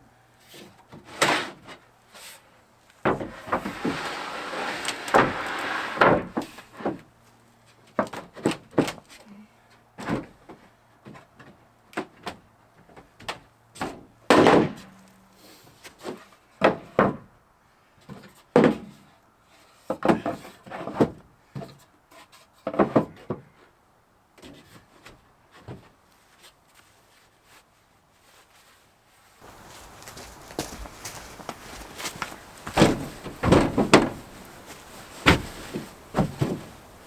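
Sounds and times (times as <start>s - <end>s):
scraping: 29.4s - 37.0s
knocks and bangs: 31.1s - 37.0s.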